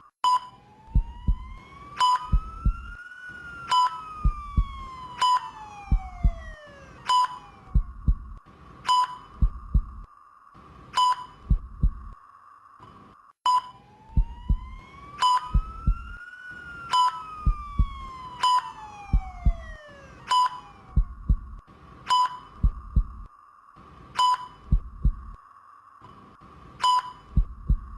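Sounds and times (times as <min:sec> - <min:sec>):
patient monitor beeping: 0:00.2 - 0:03.0, 0:03.7 - 0:10.1, 0:10.9 - 0:12.2, 0:12.9 - 0:16.2, 0:16.9 - 0:23.3, 0:24.2 - 0:25.4, 0:26.1 - 0:27.9
low double thumps: 0:01.0 - 0:01.6, 0:04.2 - 0:04.8, 0:05.9 - 0:06.5, 0:07.7 - 0:08.4, 0:09.4 - 0:10.1, 0:11.4 - 0:12.2, 0:14.2 - 0:14.8, 0:15.5 - 0:16.1, 0:17.4 - 0:18.1, 0:19.1 - 0:19.8, 0:21.0 - 0:21.6, 0:22.6 - 0:23.3, 0:24.7 - 0:25.4, 0:27.3 - 0:27.9.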